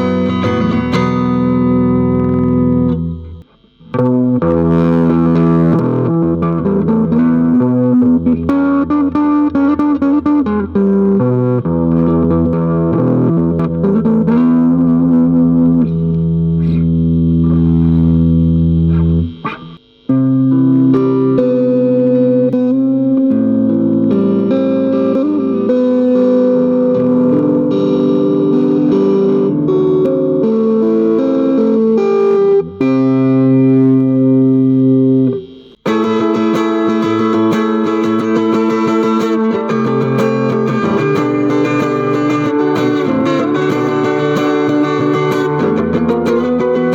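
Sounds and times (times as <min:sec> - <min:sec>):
electric guitar playing: 0:00.0 - 0:46.9.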